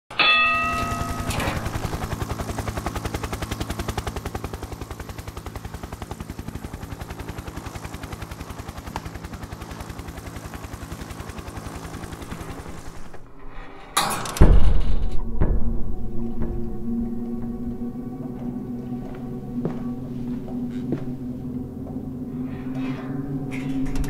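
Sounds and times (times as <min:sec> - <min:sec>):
mechanical alarm clock ringing: 0:00.2 - 0:02.2.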